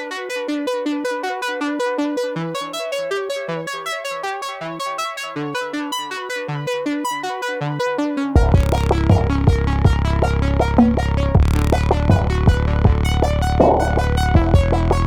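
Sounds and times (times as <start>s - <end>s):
bass line: 8.4s - 15.0s
synthesizer keyboard run: 8.4s - 15.0s.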